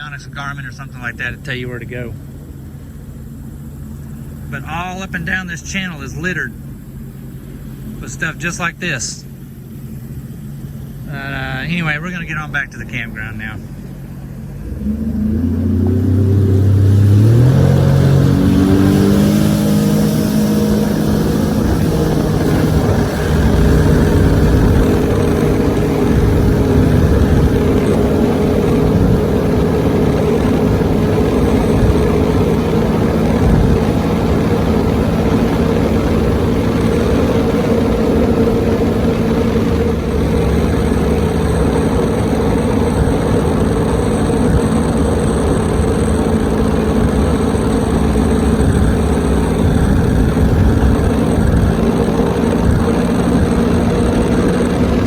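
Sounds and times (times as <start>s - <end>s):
jet ski engine throttling up: 0.0s - 55.0s
water noise: 0.0s - 55.0s
rushing wind: 13.6s - 55.0s.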